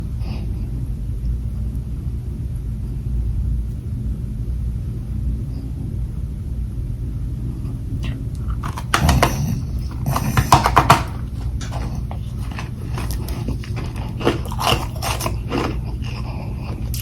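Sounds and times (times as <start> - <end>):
steady low rumble: 0.0 - 10.2
crunching frost bites: 8.4 - 17.0.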